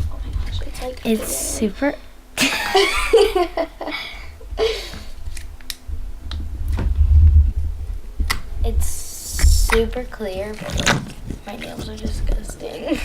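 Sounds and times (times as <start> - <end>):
girl giggling: 2.4 - 5.1
handling bumps on microphone: 5.9 - 8.7.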